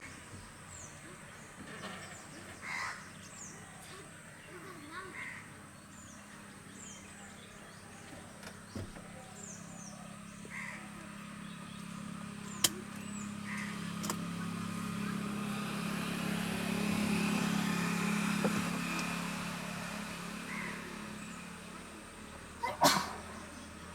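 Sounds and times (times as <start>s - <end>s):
small birds chirping: 0.0s - 23.9s
vehicle engine hum: 0.0s - 23.9s
crows cawing: 2.6s - 3.2s, 5.0s - 5.6s, 10.4s - 11.1s, 13.4s - 13.9s, 20.4s - 21.1s.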